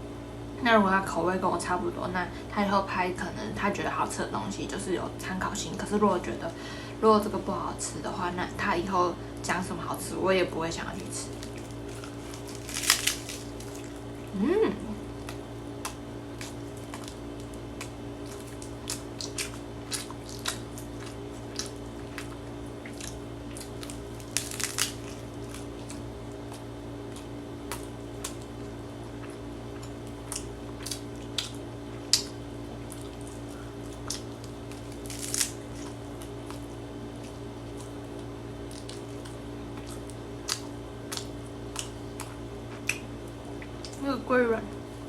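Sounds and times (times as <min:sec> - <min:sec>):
steady low hum: 0:00.0 - 0:45.0
wet mouth clicks and smacks chewing: 0:15.2 - 0:24.0, 0:25.8 - 0:34.8, 0:38.7 - 0:44.0.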